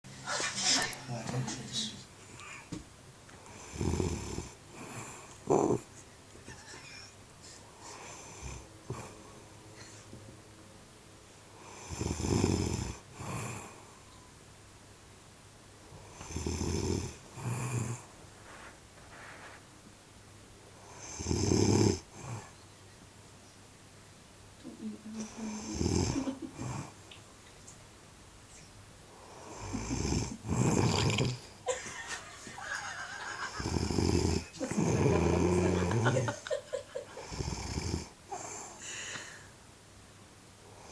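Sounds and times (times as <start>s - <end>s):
woman snoring: 3.5s - 5.9s, 11.6s - 13.8s, 16.1s - 18.0s, 20.9s - 22.5s, 25.2s - 27.0s, 29.2s - 31.5s, 33.5s - 36.4s, 37.2s - 39.1s
woman snoring gargling: 5.5s - 5.8s, 25.4s - 26.9s, 29.7s - 31.4s, 33.6s - 36.3s
soft breath: 17.4s - 19.8s, 38.3s - 39.6s.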